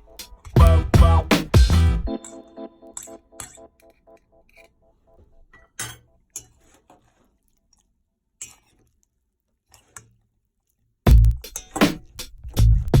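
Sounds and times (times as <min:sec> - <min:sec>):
electronic music with heavy beat: 0:00.0 - 0:02.4.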